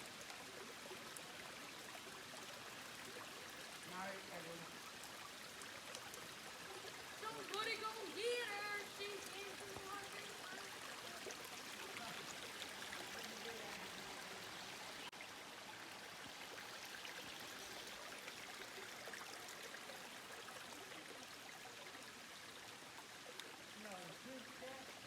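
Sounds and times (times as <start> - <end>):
waterfall rushing: 6.6 - 15.1.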